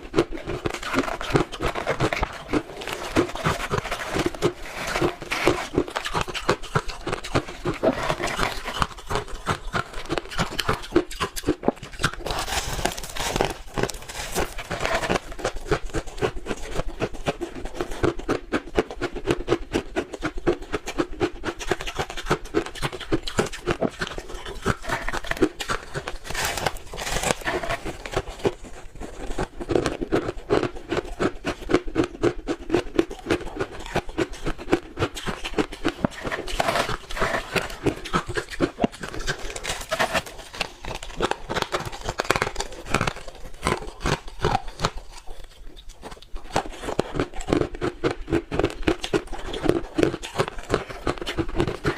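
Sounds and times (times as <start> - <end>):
chewing crushed ice: 0.0 - 51.9.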